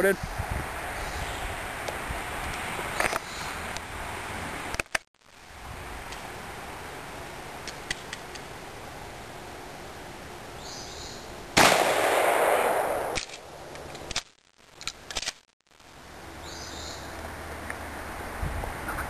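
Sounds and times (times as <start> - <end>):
shotgun blast: 11.6 - 13.4.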